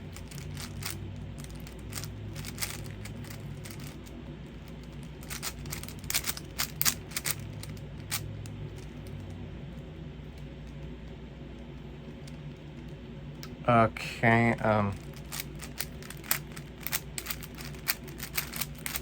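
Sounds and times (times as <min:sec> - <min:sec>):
steady low hum: 0:00.0 - 0:19.0
puzzle cube plastic clicking: 0:00.1 - 0:09.3, 0:15.0 - 0:19.0.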